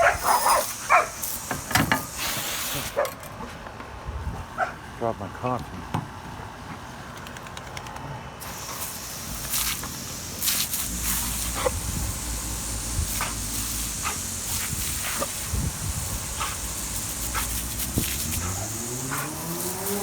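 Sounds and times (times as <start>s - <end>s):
garden hose spraying water: 0.0s - 3.0s, 8.4s - 20.0s.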